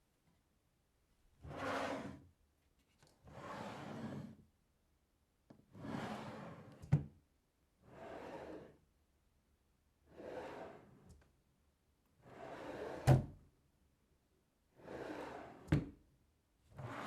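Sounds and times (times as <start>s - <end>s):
wooden drawer sliding: 16.8s - 17.0s.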